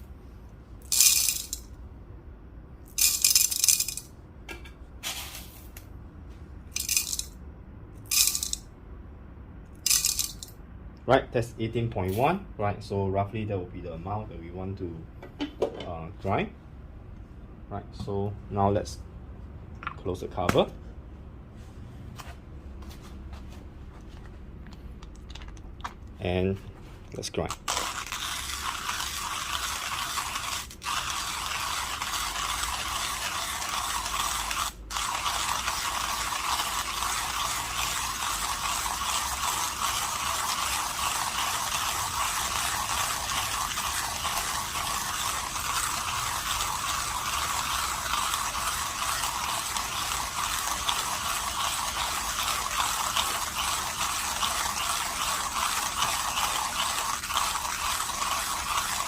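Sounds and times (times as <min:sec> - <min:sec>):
hand grinder grinding coffee beans: 0:00.8 - 0:01.6, 0:02.9 - 0:04.1, 0:06.8 - 0:07.4, 0:08.1 - 0:08.6, 0:09.8 - 0:10.5, 0:27.2 - 0:59.0.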